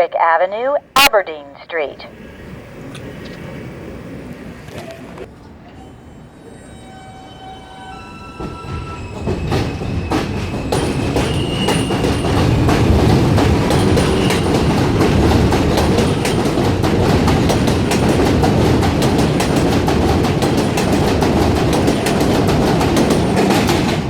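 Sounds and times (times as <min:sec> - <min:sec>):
subway train rumble: 0:00.6 - 0:24.0
wheels clacking over rail joints: 0:08.4 - 0:24.0.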